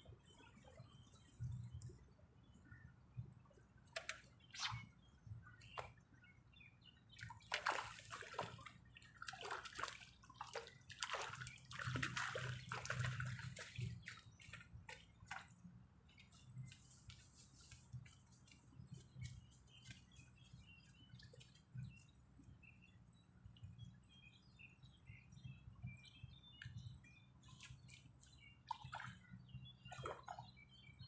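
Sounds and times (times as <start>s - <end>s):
water splashing and sloshing: 7.0s - 22.3s, 27.4s - 30.8s.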